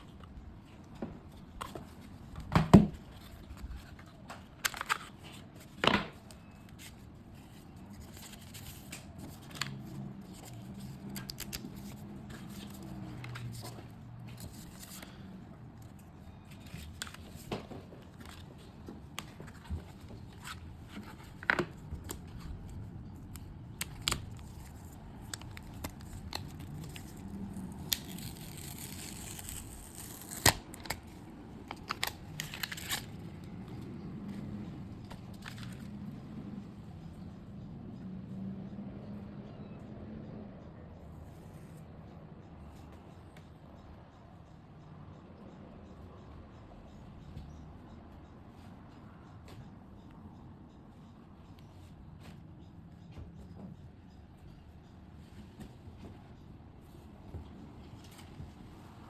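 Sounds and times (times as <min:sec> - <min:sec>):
packaging tearing and crinkling: 0:24.2 - 0:31.0, 0:31.8 - 0:33.2.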